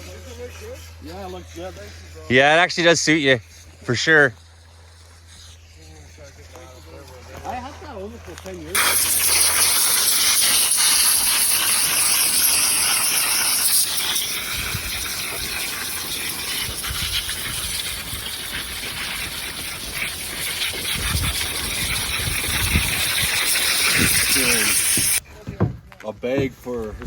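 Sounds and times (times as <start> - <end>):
water rushing: 8.8 - 25.2.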